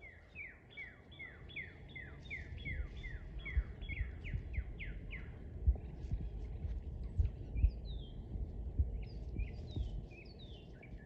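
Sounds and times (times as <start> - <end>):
bird whistling song: 0.0 - 5.3, 7.6 - 11.0
wind thuds on microphone: 2.6 - 11.0.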